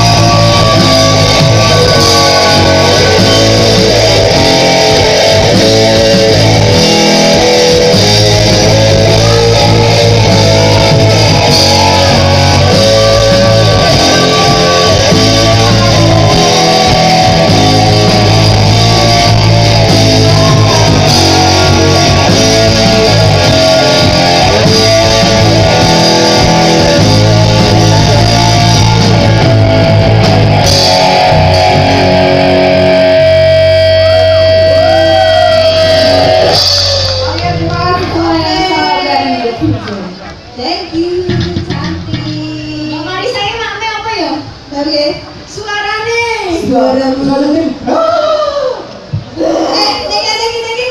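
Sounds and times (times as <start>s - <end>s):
guitar-led music with bass: 0.0s - 39.8s.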